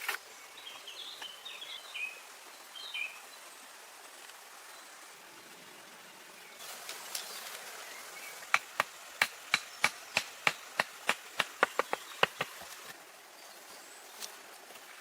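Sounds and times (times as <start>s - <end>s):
outdoor hiss: 0.0s - 15.0s
blade chopping wood: 8.5s - 12.8s.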